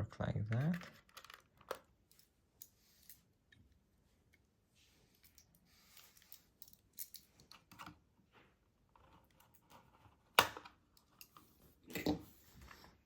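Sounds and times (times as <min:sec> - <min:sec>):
plastic clicks and scraping: 0:00.5 - 0:02.2.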